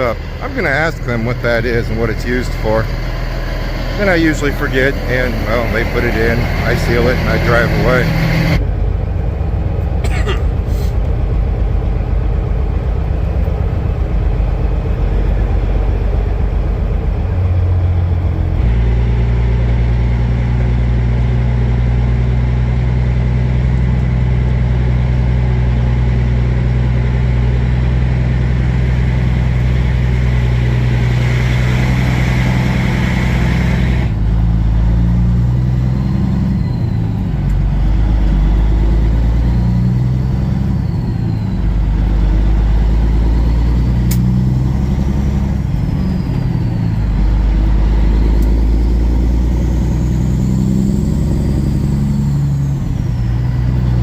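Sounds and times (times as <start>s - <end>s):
truck diesel engine droning: 0.0s - 54.0s.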